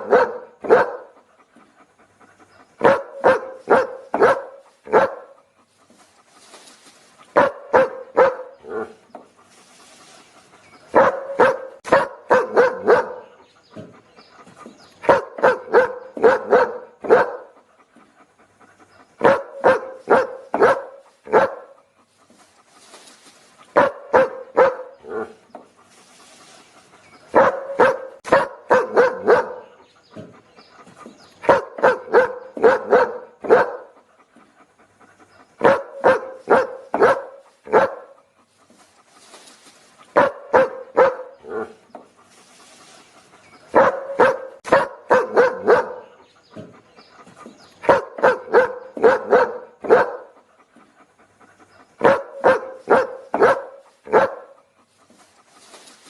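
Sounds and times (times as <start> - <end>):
dog barking: 0.0 - 1.2, 2.8 - 5.4, 7.3 - 9.0, 10.9 - 13.9, 15.0 - 17.6, 19.2 - 21.8, 23.7 - 25.4, 27.3 - 30.3, 31.4 - 34.0, 35.6 - 38.2, 40.1 - 41.8, 43.7 - 46.7, 47.8 - 50.4, 52.0 - 54.6.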